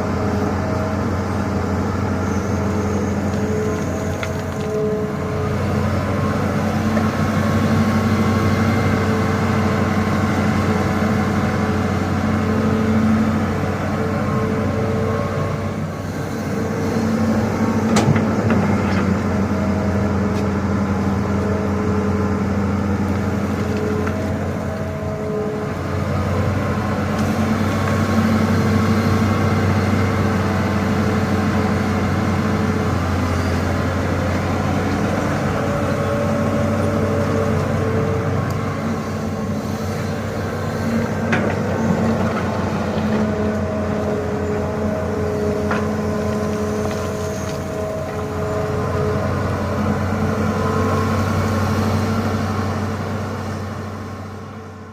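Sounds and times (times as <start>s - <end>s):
excavator diesel engine running: 0.0s - 54.9s
hydraulic whine: 0.1s - 54.9s.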